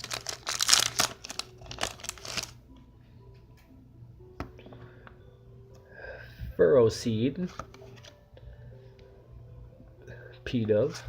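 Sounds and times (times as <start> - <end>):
foil wrapper crinkling and tearing: 0.0 - 2.6.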